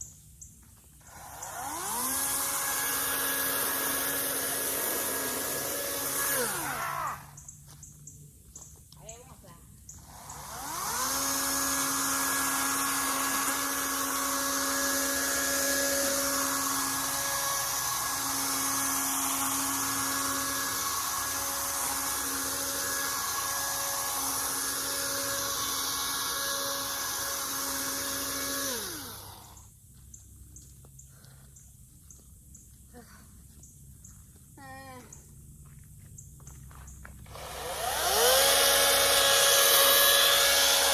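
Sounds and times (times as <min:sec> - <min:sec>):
electric chainsaw whining: 0:01.0 - 0:07.4, 0:10.0 - 0:29.7, 0:37.3 - 0:40.9.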